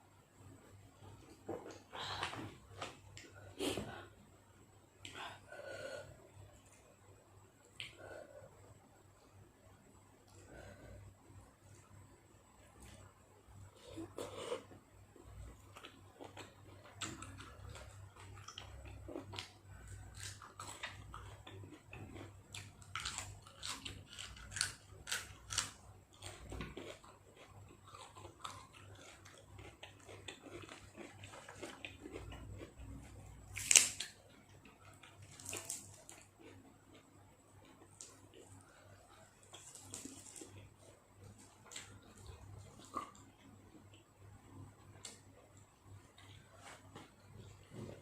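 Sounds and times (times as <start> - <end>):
person chewing food: 13.7 - 48.0.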